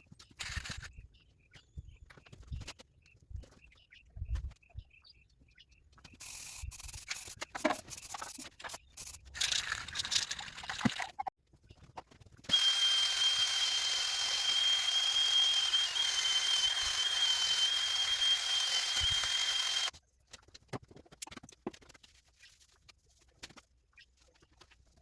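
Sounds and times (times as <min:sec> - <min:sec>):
spray paint can hissing: 0:06.2 - 0:11.0.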